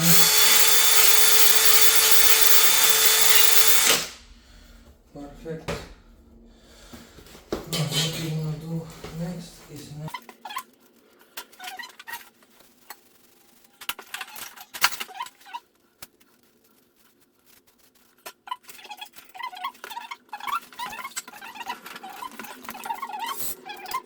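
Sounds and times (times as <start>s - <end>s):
squeaky rubbing: 17.5s - 24.0s.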